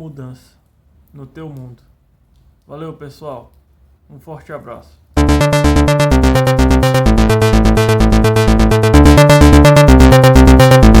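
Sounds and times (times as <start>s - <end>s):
loud electronic music: 5.2s - 11.0s.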